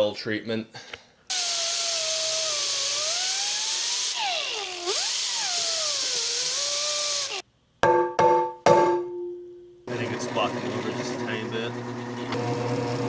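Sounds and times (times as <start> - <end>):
power drill drilling metal: 1.3 - 7.4.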